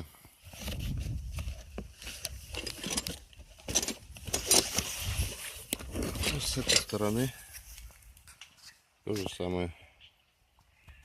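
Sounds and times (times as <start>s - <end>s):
cardboard scrapes and rustles: 0.4s - 7.3s.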